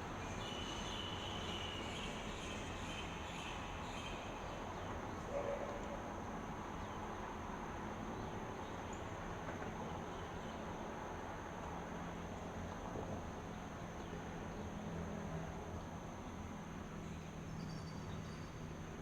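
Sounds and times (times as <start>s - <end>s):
high insect drone: 0.0s - 5.2s
outdoor background hiss: 0.0s - 19.0s.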